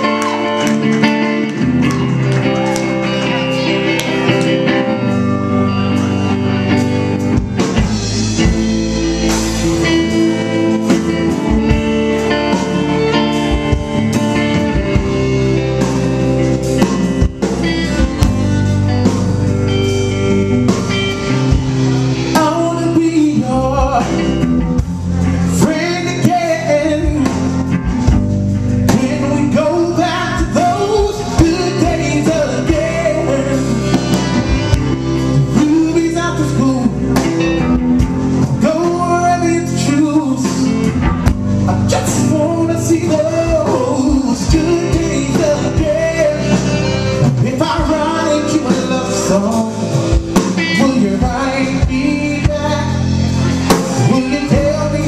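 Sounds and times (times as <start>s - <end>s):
blues-rock band music: 0.0s - 55.0s
person singing: 20.7s - 24.6s, 25.2s - 27.7s, 28.8s - 37.4s, 38.4s - 55.0s.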